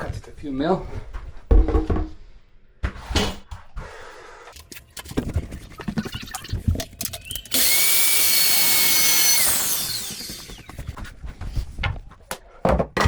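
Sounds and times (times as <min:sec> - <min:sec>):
saw spinning down whine: 0:07.1 - 0:11.0
power saw cutting wood: 0:07.2 - 0:11.0.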